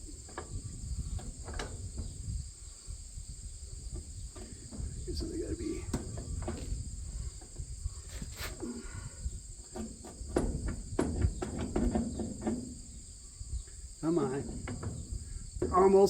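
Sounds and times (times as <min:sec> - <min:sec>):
crickets chirring: 0:00.0 - 0:16.0
metal knocks and clanks: 0:03.9 - 0:07.6, 0:09.6 - 0:13.0, 0:14.1 - 0:16.0.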